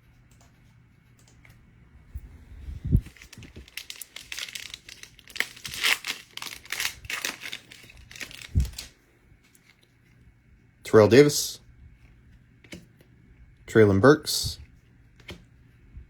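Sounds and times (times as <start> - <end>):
wrapper tearing and crinkling: 3.0 - 8.9.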